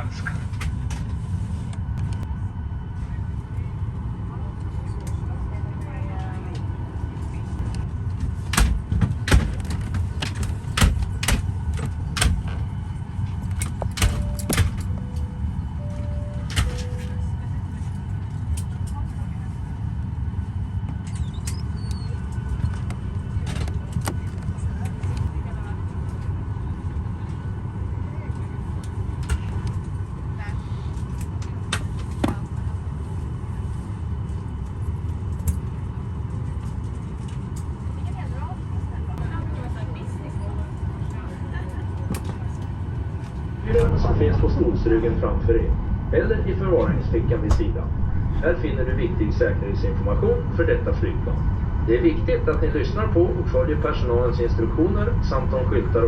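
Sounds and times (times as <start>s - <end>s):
aircraft cabin rumble: 0.0s - 56.0s
sharp clicks and knocks: 8.5s - 12.6s.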